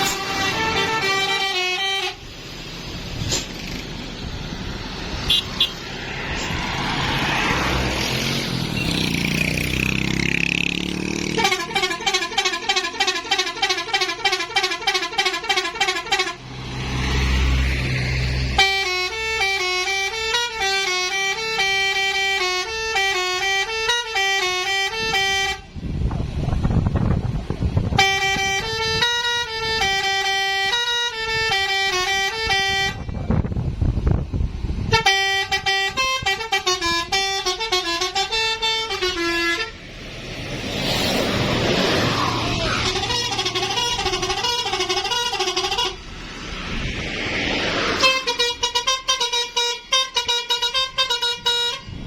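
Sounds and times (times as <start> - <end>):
multi-tone air horn tune: 0.0 - 2.3, 11.3 - 16.4, 18.5 - 25.8, 27.9 - 33.1, 34.9 - 39.8, 42.6 - 46.3, 47.9 - 52.0
rushing air noise: 2.3 - 10.2, 25.6 - 29.1, 39.6 - 48.9.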